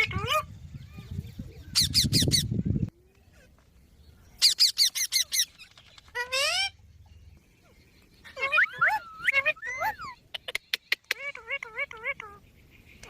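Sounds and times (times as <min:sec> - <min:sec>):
parrot calling: 0:08.2 - 0:12.4.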